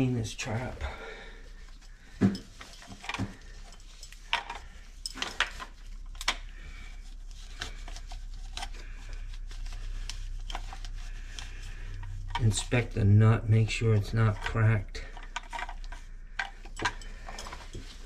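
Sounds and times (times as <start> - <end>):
pipe pieces clicking and knocking: 14.4 - 18.0.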